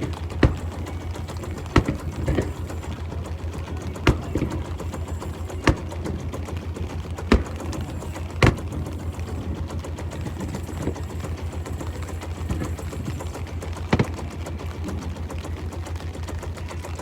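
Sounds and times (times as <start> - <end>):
sharp bangs: 0.0 - 3.3, 3.9 - 6.4, 7.2 - 14.8
boat engine pulsing hum: 0.0 - 17.0.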